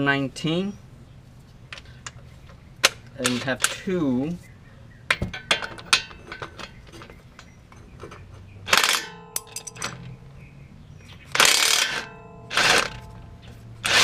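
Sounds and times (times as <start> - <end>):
ringing steel clanks: 5.1 - 10.2, 11.3 - 14.0
wrench clicks: 11.3 - 13.1.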